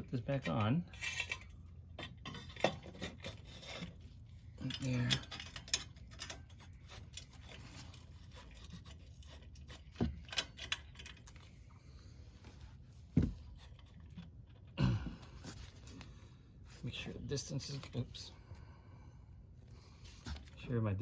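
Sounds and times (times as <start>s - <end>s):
metal parts scraping: 0.3s - 11.5s.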